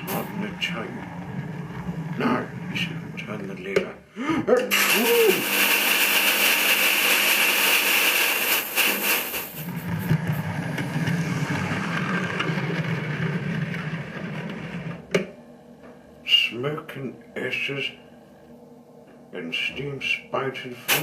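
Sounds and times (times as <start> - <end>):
steam locomotive hissing steam: 0.0 - 0.7, 4.7 - 10.5
train running rumble: 0.0 - 3.6, 9.6 - 15.0.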